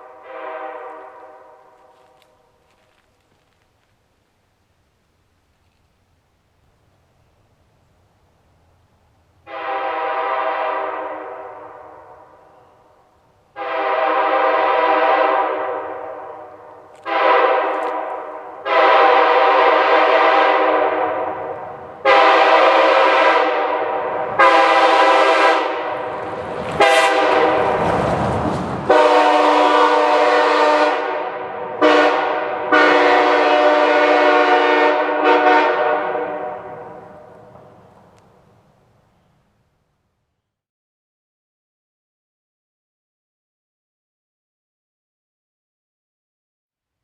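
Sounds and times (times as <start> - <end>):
locomotive air horn blasts: 0.0 - 2.2, 9.4 - 12.6, 13.5 - 27.8, 28.9 - 37.4
rushing noise: 14.2 - 30.4.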